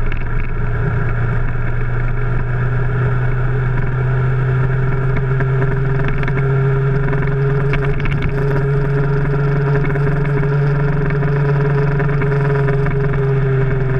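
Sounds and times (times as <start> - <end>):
motorcycle engine drone: 0.0 - 13.9.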